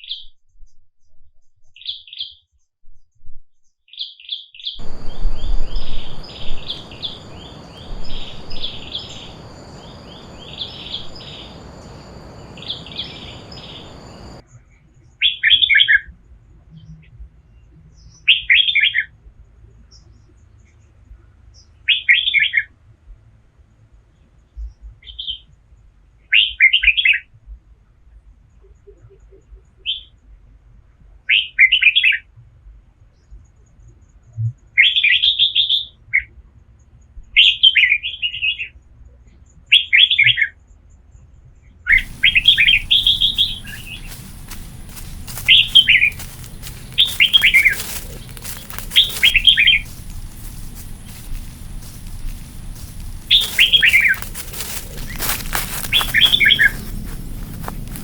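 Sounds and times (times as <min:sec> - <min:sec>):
hiss with crackling: 0:04.8 - 0:14.4, 0:41.9 - 0:58.0
songbird singing: 0:04.8 - 0:14.4, 0:41.9 - 0:58.0.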